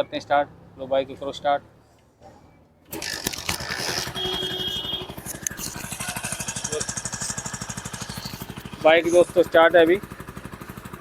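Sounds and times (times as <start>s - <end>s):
motorcycle engine idling: 3.4s - 11.0s.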